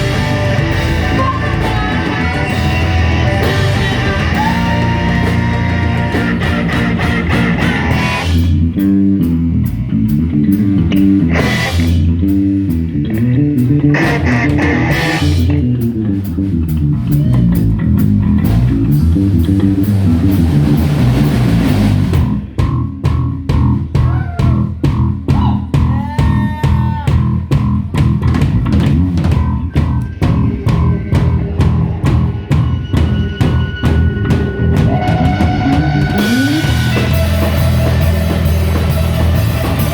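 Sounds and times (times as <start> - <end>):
bass guitar: 0.0 - 39.9
drum kit: 0.0 - 39.9
guitar: 0.0 - 39.9.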